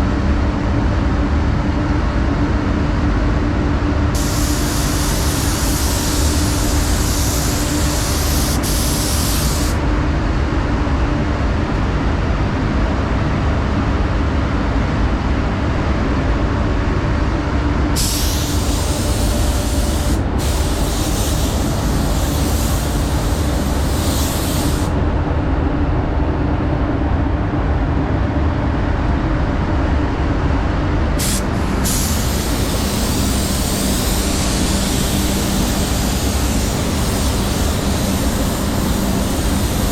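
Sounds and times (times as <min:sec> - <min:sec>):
fans running: 0:00.0 - 0:39.9
spray gun air hissing: 0:04.2 - 0:09.8, 0:18.0 - 0:25.0, 0:31.2 - 0:39.9.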